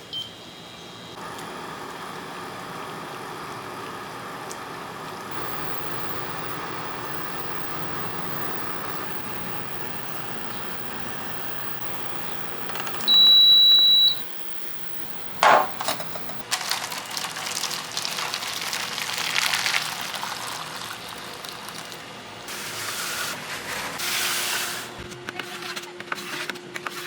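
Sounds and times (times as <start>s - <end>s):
high electronic beep: 13.1s - 14.2s
sharp knock: 15.4s - 16.0s
liquid sounds: 16.0s - 24.0s.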